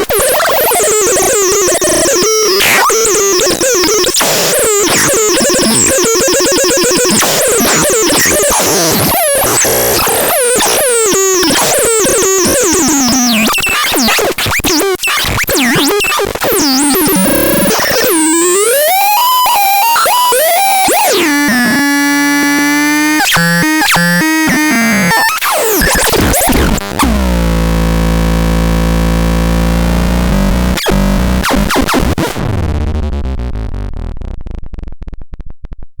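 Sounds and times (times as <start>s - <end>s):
harsh synthesizer noise: 0.0s - 13.5s, 16.5s - 35.4s
low buzzing synth drone: 27.0s - 31.7s, 32.4s - 36.0s.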